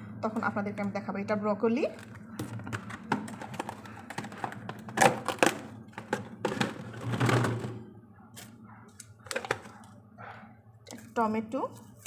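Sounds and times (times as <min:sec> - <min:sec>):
food containers clicking and knocking: 0:01.9 - 0:07.9, 0:09.1 - 0:10.0.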